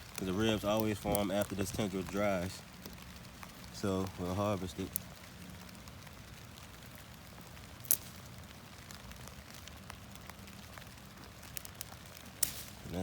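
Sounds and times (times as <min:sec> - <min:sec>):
light rain: 0:00.0 - 0:13.0
sharp snap: 0:12.4 - 0:12.8.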